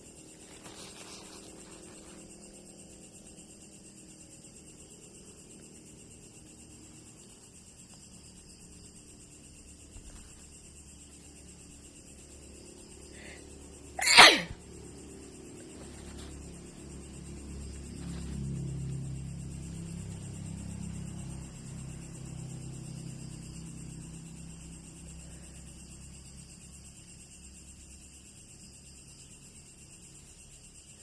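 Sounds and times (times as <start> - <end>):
person sneezing: 14.0 - 14.6.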